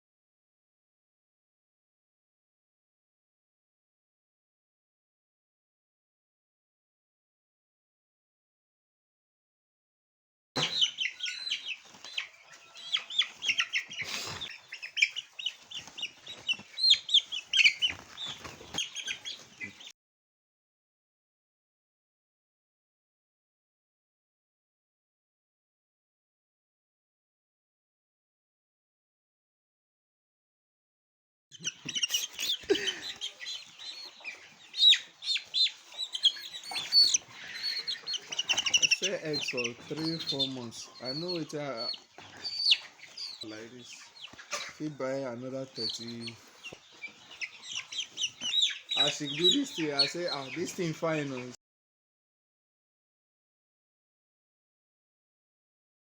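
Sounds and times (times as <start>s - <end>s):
chicks peeping and chirping: 10.6s - 19.9s, 31.5s - 51.6s.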